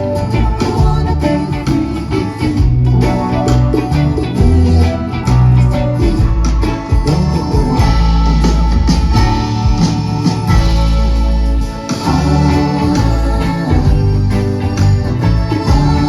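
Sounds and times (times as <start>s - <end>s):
bass line: 0.0s - 16.0s
guitar: 0.0s - 16.0s
percussion beats: 0.0s - 16.0s.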